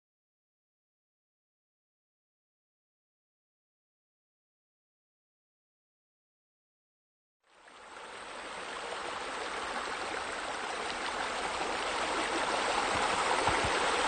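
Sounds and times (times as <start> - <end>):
running splashing water: 7.8 - 14.0.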